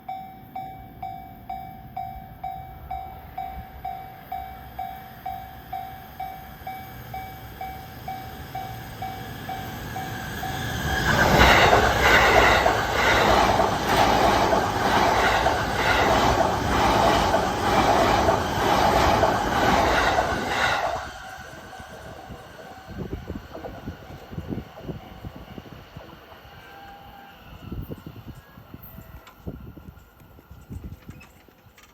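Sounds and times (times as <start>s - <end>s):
train wheels clattering: 5.3s - 25.4s.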